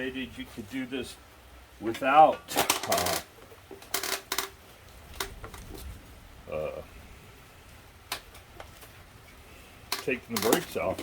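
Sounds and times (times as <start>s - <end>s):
man humming: 6.5s - 6.9s.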